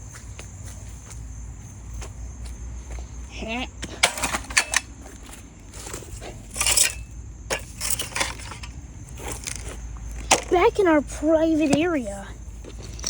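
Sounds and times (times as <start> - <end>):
crunching and clinking: 3.8 - 13.0.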